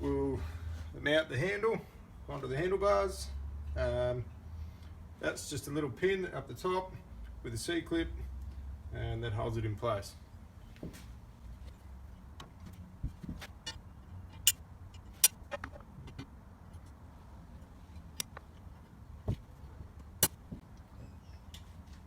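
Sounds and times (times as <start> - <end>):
metal parts clicking and knocking: 12.4 - 17.0.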